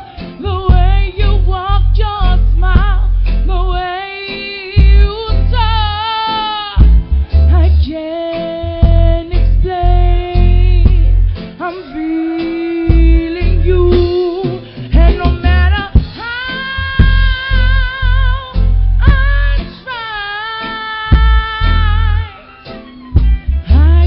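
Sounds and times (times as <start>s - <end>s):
woman singing with vibrato: 0.0s - 22.6s, 23.7s - 24.0s
guitar: 0.0s - 24.0s
pulsing low bass: 0.5s - 3.8s, 8.7s - 11.4s, 12.9s - 14.1s, 16.9s - 19.6s, 23.2s - 24.0s.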